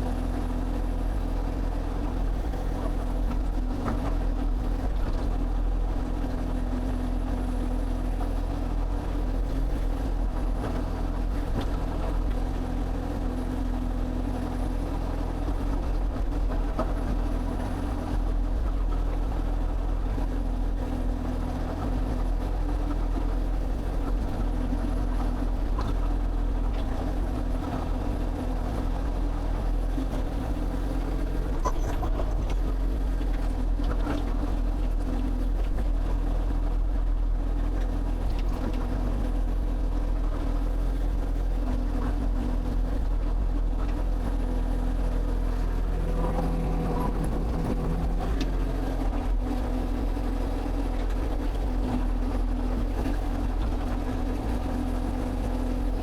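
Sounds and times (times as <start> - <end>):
diesel engine droning: 0.0 - 56.0.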